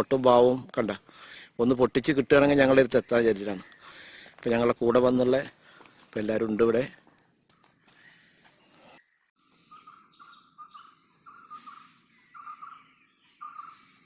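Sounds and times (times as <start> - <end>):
faint bird calling: 3.0 - 5.8, 7.5 - 14.0.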